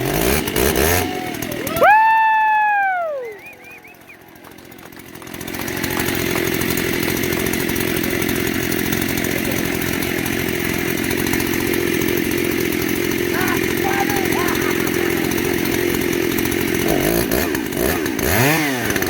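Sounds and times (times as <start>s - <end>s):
two-stroke chainsaw engine: 0.0s - 19.0s.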